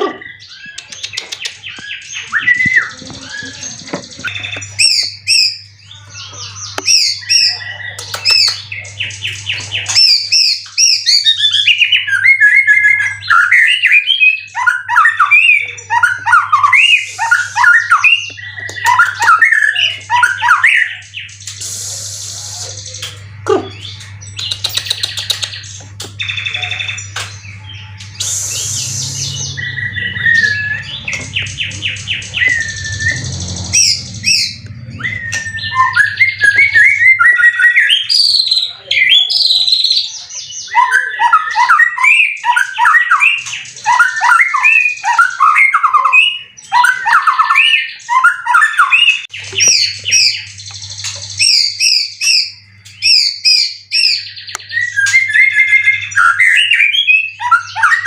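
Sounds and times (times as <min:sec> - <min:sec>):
bird singing whistles and trills: 0:00.0 - 0:58.0.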